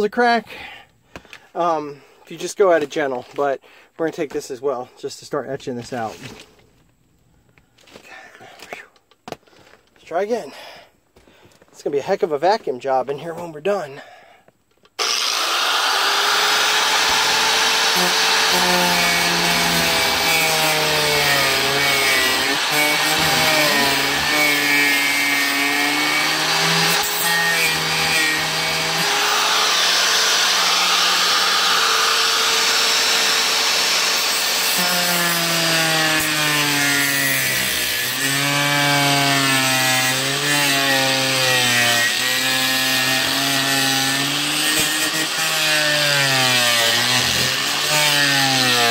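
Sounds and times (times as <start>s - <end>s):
angle grinder cutting plastic panel: 15.0s - 48.9s.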